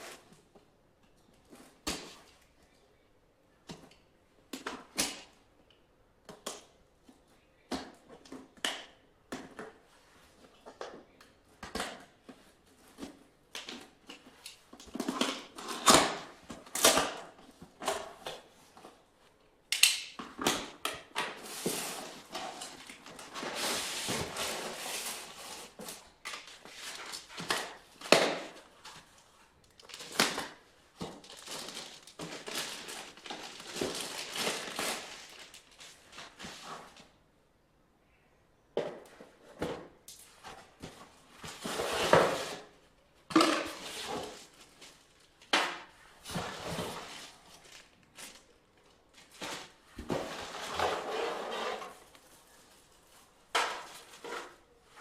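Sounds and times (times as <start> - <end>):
rustling and scraping: 21.2 - 37.2, 39.1 - 42.8, 43.6 - 55.0.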